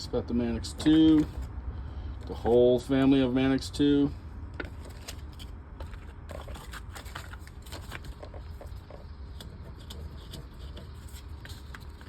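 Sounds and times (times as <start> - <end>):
steady low hum: 0.0 - 12.0
paper rustling and tapping: 4.6 - 12.0.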